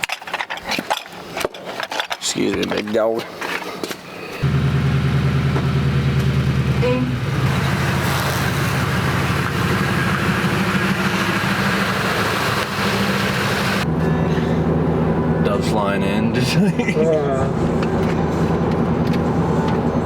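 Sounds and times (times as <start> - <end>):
vehicle engine humming: 4.4 - 20.0.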